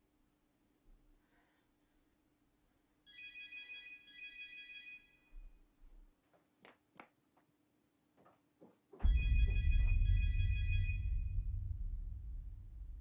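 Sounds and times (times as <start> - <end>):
telephone ringing: 3.1 - 5.3.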